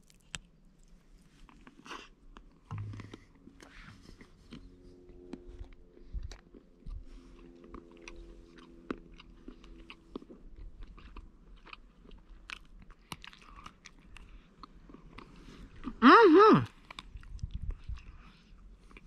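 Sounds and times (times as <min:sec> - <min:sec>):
faint steady hum: 0:00.1 - 0:19.0
person chewing: 0:05.3 - 0:16.0, 0:16.6 - 0:19.0.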